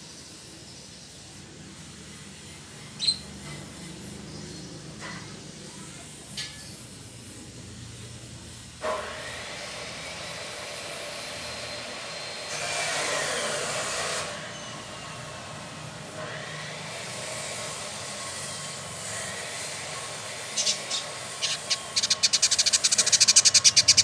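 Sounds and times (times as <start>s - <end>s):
bird whistling: 20.4s - 24.0s.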